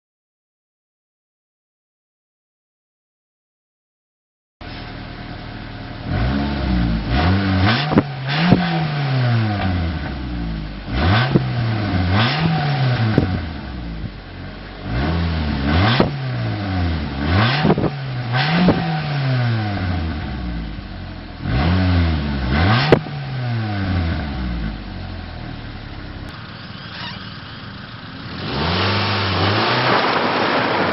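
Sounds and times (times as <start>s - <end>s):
car engine idling and revving: 4.6s - 30.9s
steady rushing noise: 28.9s - 30.9s.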